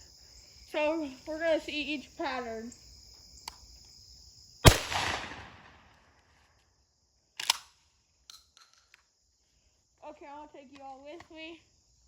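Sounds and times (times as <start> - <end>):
crickets chirping: 0.0 - 12.0
shotgun shot with echo: 4.6 - 5.9.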